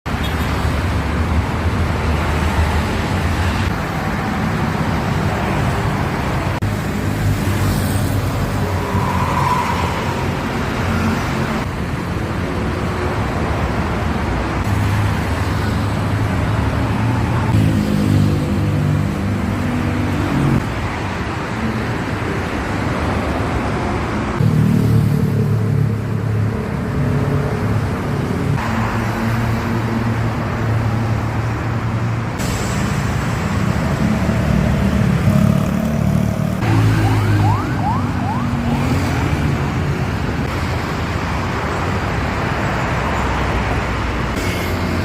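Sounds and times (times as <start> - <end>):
buses and cars driving past: 0.1 - 45.0.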